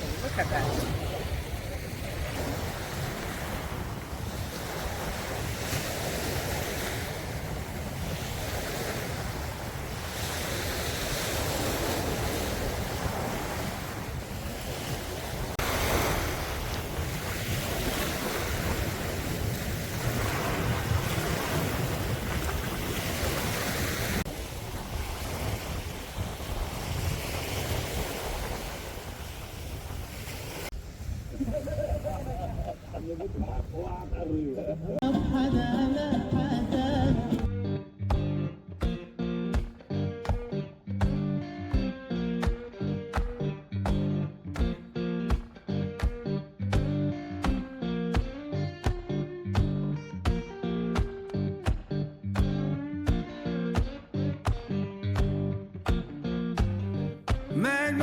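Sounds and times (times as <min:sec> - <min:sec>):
loud surf breaking on beach: 0:00.0 - 0:34.4
wind buffeting microphone: 0:00.0 - 0:37.5.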